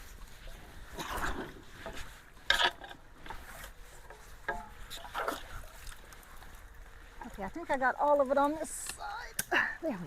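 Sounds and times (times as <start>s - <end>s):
sticks scraping and knocking: 0.9s - 6.0s.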